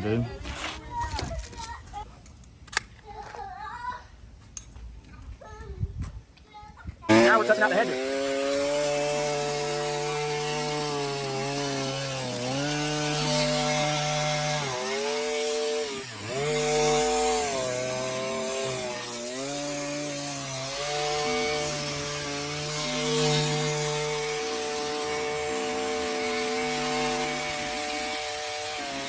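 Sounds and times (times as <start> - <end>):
hedge trimmer engine running: 7.1 - 29.0.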